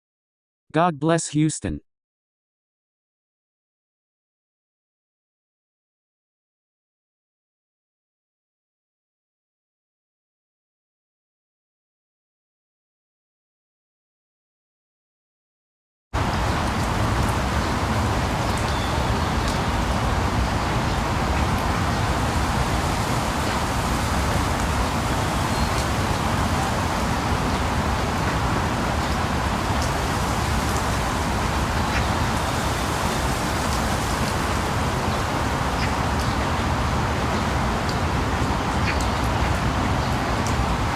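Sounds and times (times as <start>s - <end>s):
steady rain: 16.2s - 40.9s.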